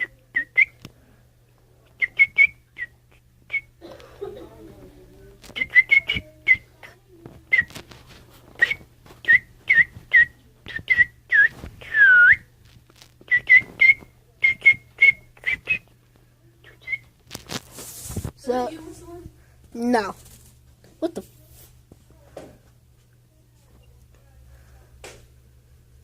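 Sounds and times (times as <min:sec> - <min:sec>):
bird whistling chirps: 0:02.0 - 0:03.7, 0:08.6 - 0:12.5, 0:13.3 - 0:15.9.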